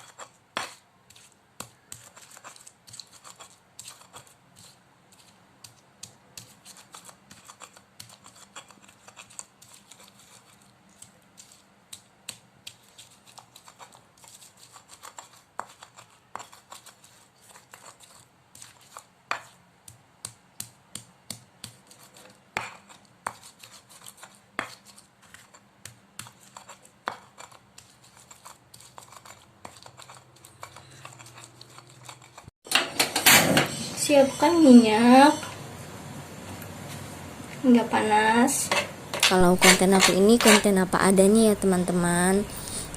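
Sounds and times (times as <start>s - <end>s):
pestle grinding in mortar: 0.0s - 32.5s.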